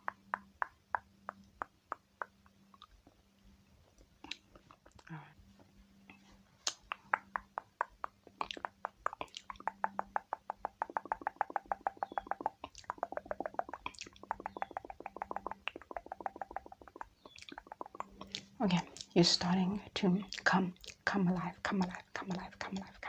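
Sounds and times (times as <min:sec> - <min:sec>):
fast tapping on makeup: 0:00.0 - 0:02.6, 0:06.8 - 0:18.4.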